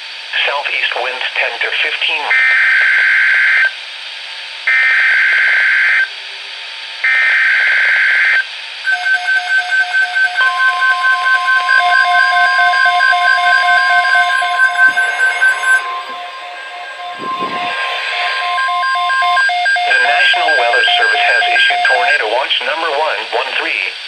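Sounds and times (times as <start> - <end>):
steady warning alarm tone: 2.3 - 3.7, 4.7 - 22.4
digital data tones: 7.1 - 22.2
fast-pulsing alarm beep: 7.1 - 22.2.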